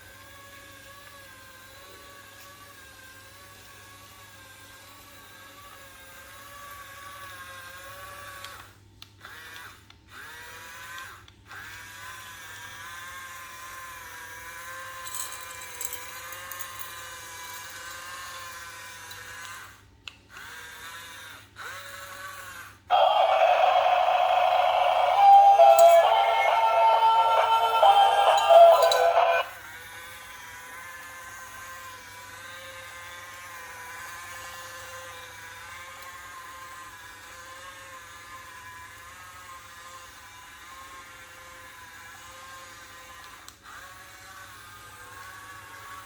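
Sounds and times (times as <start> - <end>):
small motor whining: 0.0 - 46.0
loud music with singing: 22.9 - 29.4.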